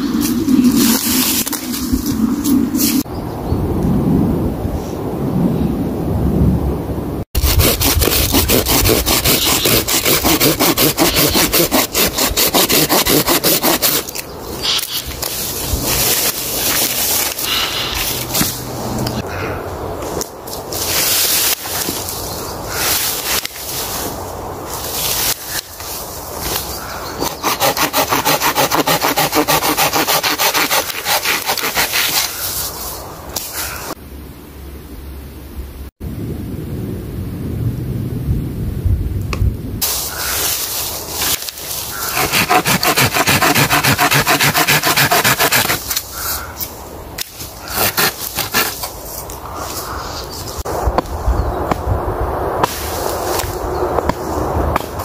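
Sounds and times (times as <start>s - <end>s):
hand saw cutting wood: 7.4s - 14.2s, 27.2s - 32.5s, 41.2s - 46.0s, 47.6s - 48.9s.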